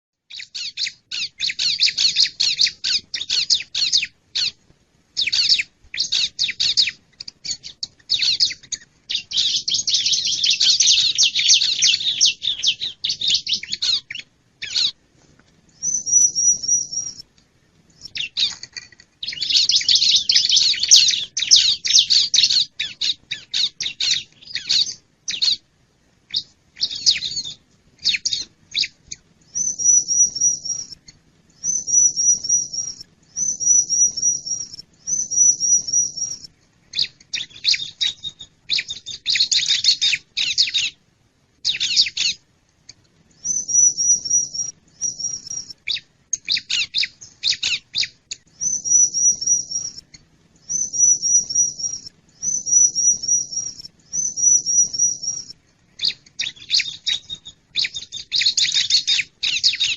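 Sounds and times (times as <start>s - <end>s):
bird harsh chattering calls: 0.3s - 4.6s, 5.2s - 15.0s, 18.0s - 25.6s, 50.7s - 59.9s.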